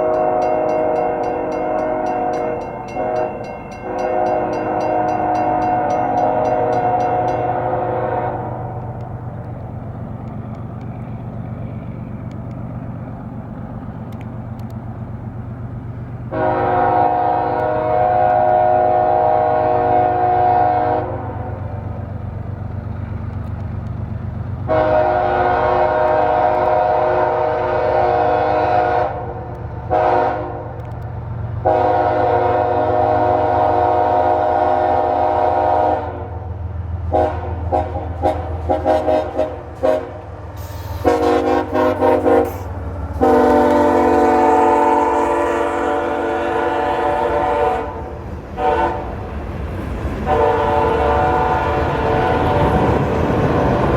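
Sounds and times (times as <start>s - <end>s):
train horn chord: 0.0s - 9.2s, 16.3s - 21.9s, 24.7s - 30.9s, 31.6s - 36.5s, 37.1s - 49.3s, 50.2s - 53.7s
diesel locomotive rumble: 0.0s - 53.9s.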